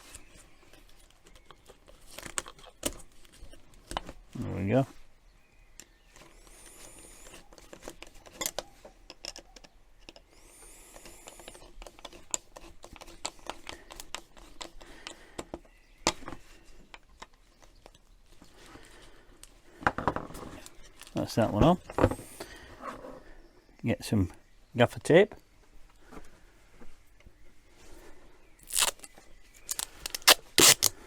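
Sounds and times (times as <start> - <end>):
thin high squeaks: 28.6 - 29.1, 29.7 - 30.9
hands fitting a hose: 28.6 - 31.0.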